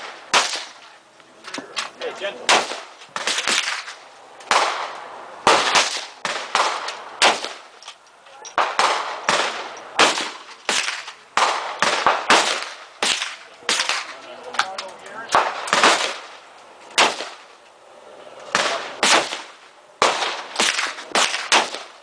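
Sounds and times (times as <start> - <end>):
gunshots with short echo: 2.5 - 7.7, 8.6 - 14.1, 18.5 - 22.0.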